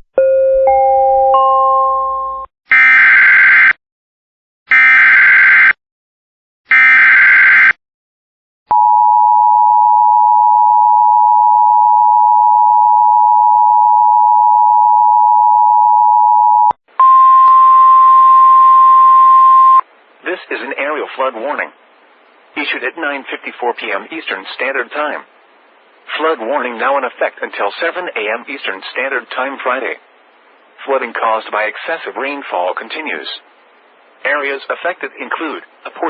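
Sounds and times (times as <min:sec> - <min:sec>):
two-tone attention signal: 0:08.7 - 0:19.8.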